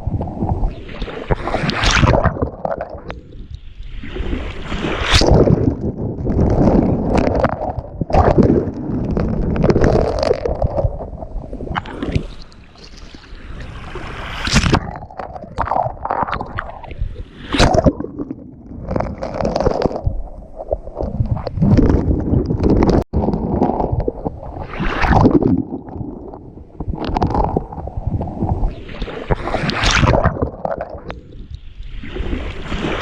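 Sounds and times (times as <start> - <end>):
ocean waves breaking on beach: 32.0 - 33.0.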